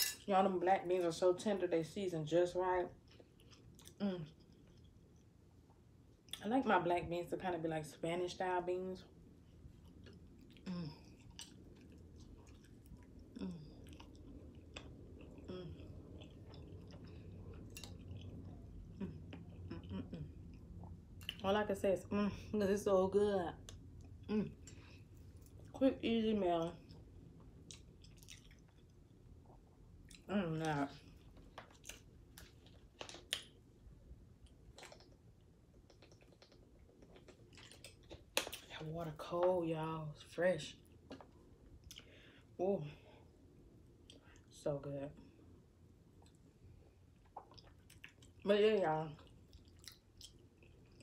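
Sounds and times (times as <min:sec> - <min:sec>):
person chewing food: 0:03.0 - 0:06.4, 0:09.3 - 0:21.4, 0:26.8 - 0:30.3, 0:31.0 - 0:33.7, 0:34.3 - 0:38.8, 0:40.8 - 0:42.3, 0:46.1 - 0:48.4, 0:49.2 - 0:51.0
wet mouth clicks and lip smacks: 0:34.8 - 0:38.6, 0:47.2 - 0:48.3.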